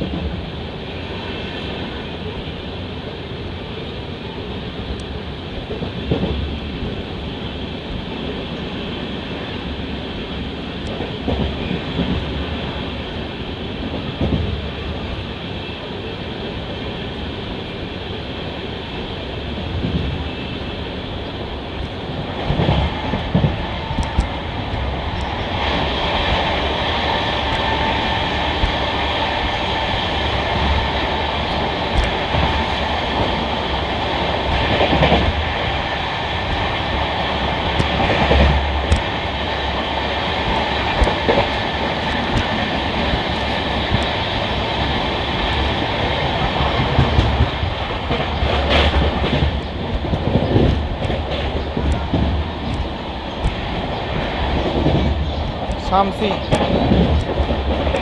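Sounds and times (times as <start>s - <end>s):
train wheels rumbling on rail: 0.0s - 58.0s
wheels clunking over rail joints: 21.2s - 58.0s.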